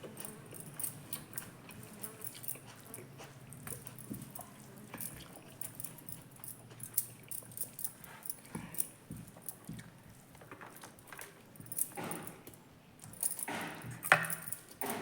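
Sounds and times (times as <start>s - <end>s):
person chewing food: 0.0s - 11.6s.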